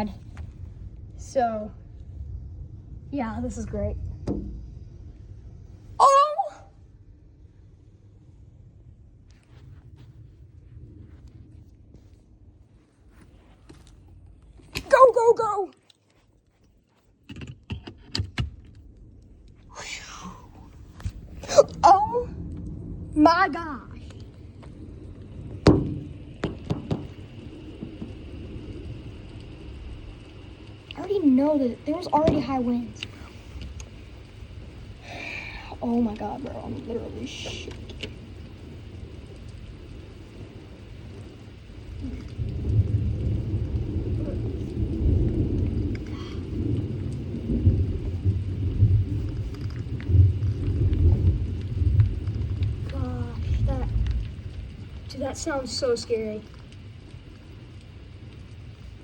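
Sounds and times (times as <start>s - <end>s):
hiss of heavy rain: 0.0s - 59.0s
storm wind rumbling: 0.0s - 59.0s
light knocks: 4.2s - 4.6s, 25.6s - 27.1s.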